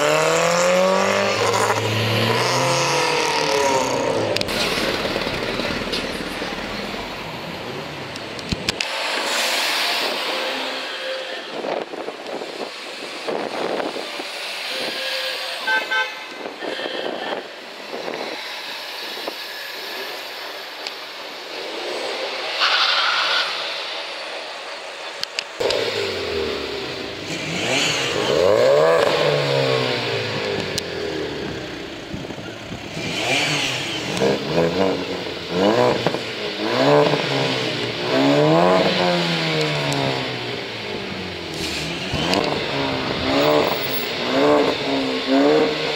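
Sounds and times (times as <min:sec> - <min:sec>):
car engine revving: 0:00.0 - 0:10.4, 0:25.6 - 0:45.9
passing traffic: 0:00.0 - 0:45.9
car horn toot: 0:14.7 - 0:17.4.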